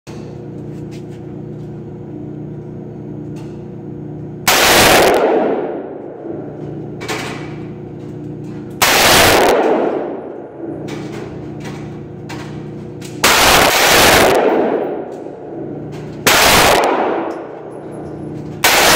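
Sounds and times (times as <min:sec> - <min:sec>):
steady low hum: 0:00.1 - 0:18.9
rifle shots: 0:04.5 - 0:05.9, 0:08.8 - 0:10.4, 0:13.2 - 0:15.4, 0:16.2 - 0:17.7, 0:18.6 - 0:18.9.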